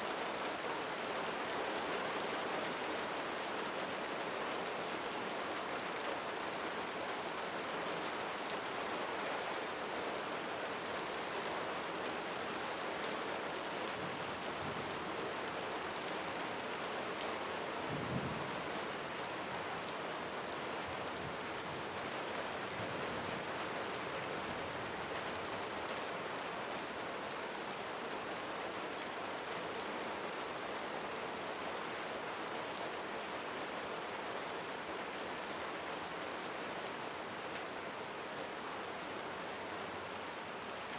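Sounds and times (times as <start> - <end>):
rain falling on leaves: 0.0 - 40.9.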